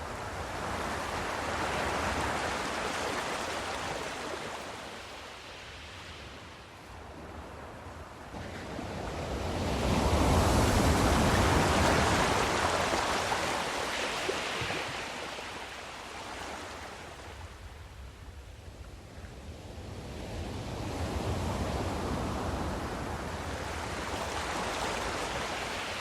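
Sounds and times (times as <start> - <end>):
ocean waves breaking: 0.4 - 6.4, 8.3 - 17.4, 21.7 - 26.0.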